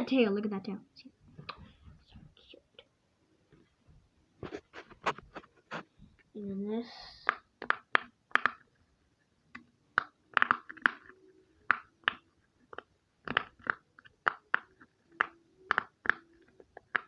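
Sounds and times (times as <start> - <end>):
fidget toy bubbles popping: 7.2 - 8.7, 9.5 - 17.0.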